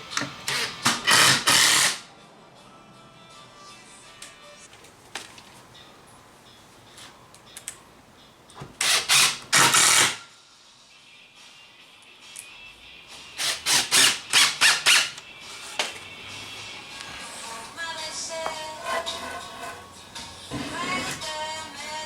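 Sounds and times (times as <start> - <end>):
impact driver driving screws: 0.5 - 2.0, 8.8 - 10.2, 13.4 - 15.2.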